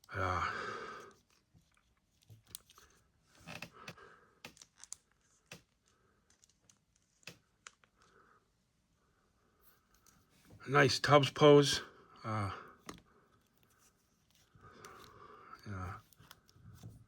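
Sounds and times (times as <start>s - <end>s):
small sharp plastic clicks: 3.6s - 8.1s.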